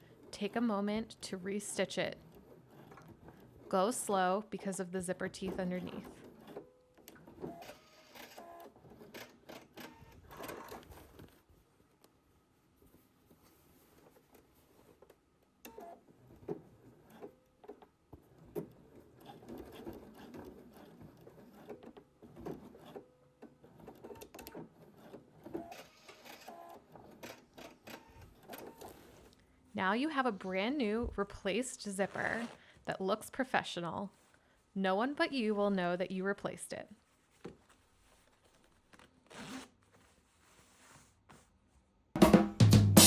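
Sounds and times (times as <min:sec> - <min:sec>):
sewing machine stitching: 0:00.0 - 0:04.3, 0:05.2 - 0:11.4, 0:13.6 - 0:29.3.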